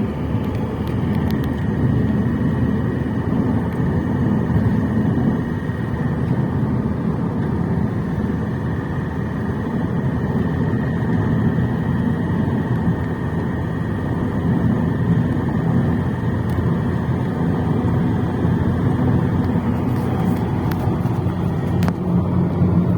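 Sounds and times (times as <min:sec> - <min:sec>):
diesel engine running: 0:00.0 - 0:22.9
engine knocking: 0:11.4 - 0:22.9.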